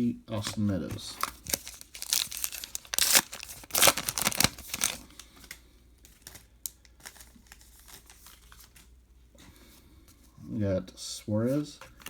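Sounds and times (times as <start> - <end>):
wrapper tearing and crinkling: 1.1 - 8.8.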